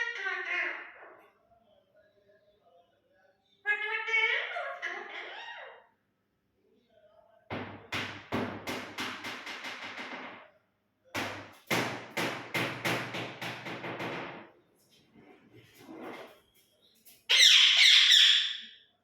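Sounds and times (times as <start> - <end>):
sharp rapid knocks: 11.2 - 14.4.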